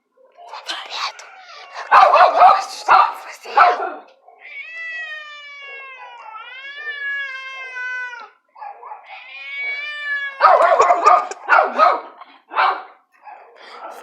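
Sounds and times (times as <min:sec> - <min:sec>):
cat yowling: 0:01.0 - 0:03.0, 0:03.6 - 0:11.9.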